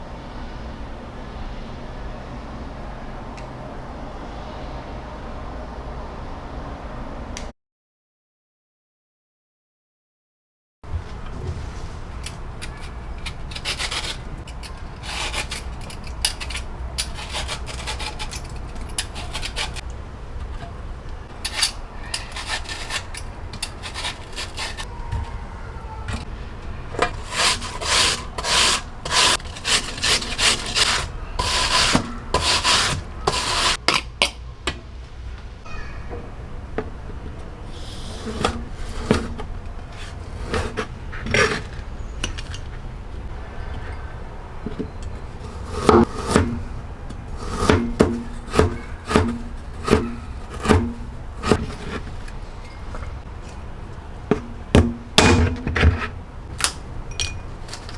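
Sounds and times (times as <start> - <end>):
pear rasped on hand grater: 12.2 - 19.8, 21.4 - 24.9, 27.0 - 33.8, 37.7 - 41.9, 45.2 - 52.3.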